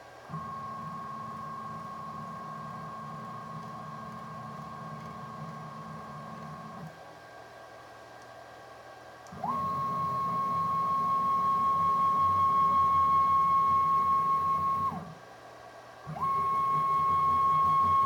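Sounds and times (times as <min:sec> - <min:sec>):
low mechanical hum: 0:00.0 - 0:18.0
motor whine: 0:09.4 - 0:15.1, 0:16.1 - 0:18.0.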